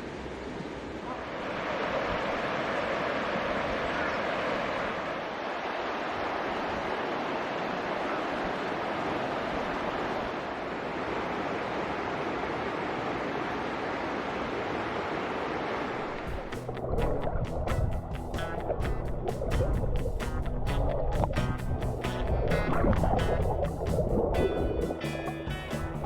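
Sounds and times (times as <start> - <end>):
stream rushing: 0.0 - 26.0
background music: 16.3 - 26.0.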